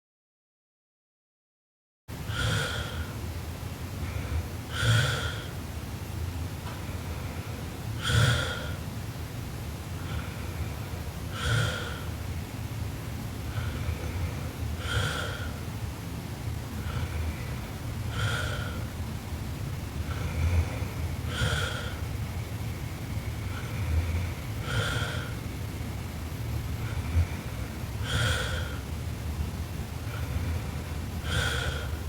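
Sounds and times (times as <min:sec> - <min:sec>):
woman snoring: 0:02.3 - 0:03.2, 0:04.3 - 0:05.6, 0:08.0 - 0:08.8, 0:11.3 - 0:12.2, 0:13.4 - 0:15.6, 0:16.8 - 0:18.9, 0:20.1 - 0:22.0, 0:23.4 - 0:25.4, 0:26.8 - 0:28.8, 0:30.0 - 0:32.0.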